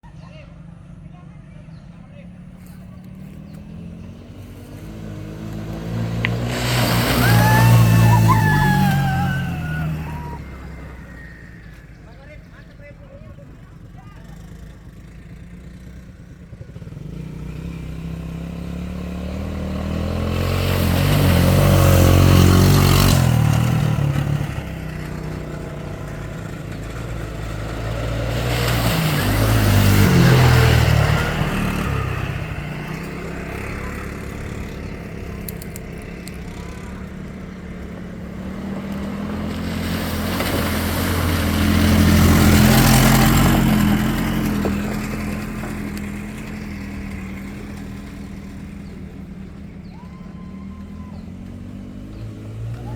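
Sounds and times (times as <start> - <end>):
off-road vehicles driving past: 0.0 - 52.9.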